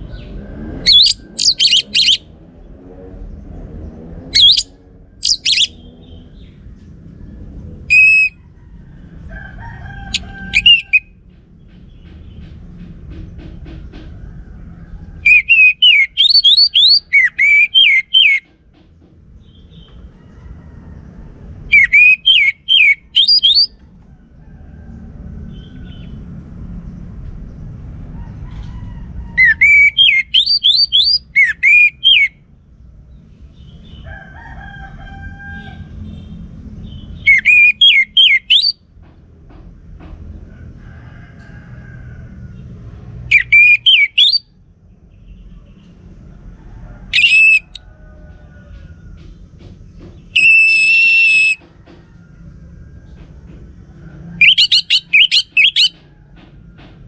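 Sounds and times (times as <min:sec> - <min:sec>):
low rumbling background: 0:00.0 - 0:34.1
faint bird call: 0:00.9 - 0:02.2
thrush whistled song: 0:00.9 - 0:02.3, 0:04.4 - 0:06.2, 0:07.9 - 0:08.4, 0:10.5 - 0:11.1, 0:15.2 - 0:18.4, 0:21.7 - 0:23.8, 0:29.4 - 0:32.4, 0:37.3 - 0:38.8, 0:43.3 - 0:44.5, 0:47.2 - 0:47.8, 0:50.4 - 0:51.6, 0:54.4 - 0:56.0.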